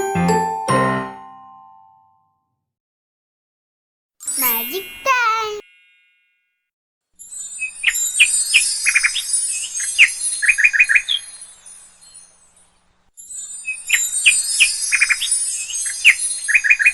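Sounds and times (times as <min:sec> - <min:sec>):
small birds chirping: 0:13.6 - 0:16.9.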